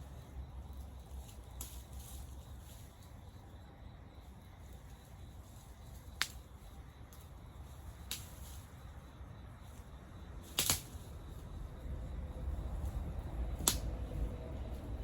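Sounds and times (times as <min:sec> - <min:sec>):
low fire rumble: 0:00.0 - 0:15.0
campfire pops and cracks: 0:06.1 - 0:06.5, 0:08.0 - 0:08.5, 0:10.5 - 0:11.0, 0:13.6 - 0:14.0.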